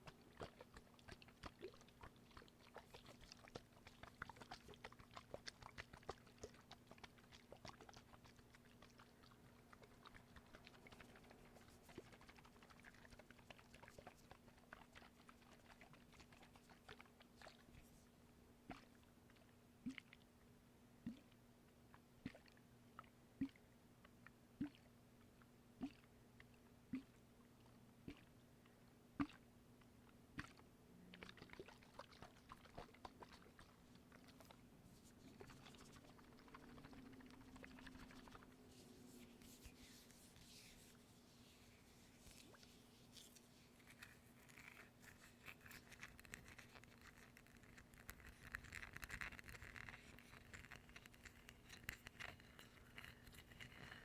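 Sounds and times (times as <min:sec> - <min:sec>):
soft crackling and scratching: 0:00.0 - 0:18.2, 0:31.2 - 0:54.0.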